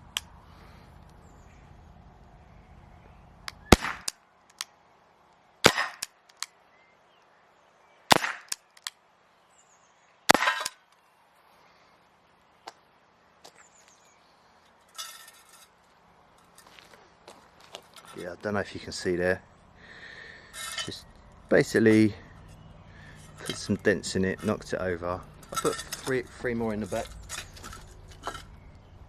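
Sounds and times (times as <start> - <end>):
air pistol shots: 3.5 - 4.1, 5.6 - 6.1, 8.1 - 8.6, 10.3 - 10.8.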